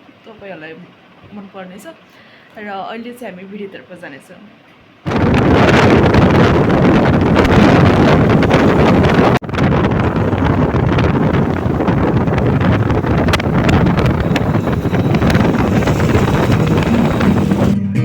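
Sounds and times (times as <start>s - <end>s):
wind buffeting microphone: 5.1s - 17.8s.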